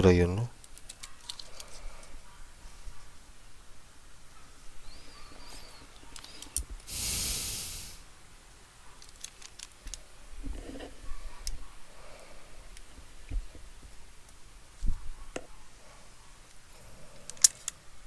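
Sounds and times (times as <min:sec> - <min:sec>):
spray can hiss: 0:06.9 - 0:08.0.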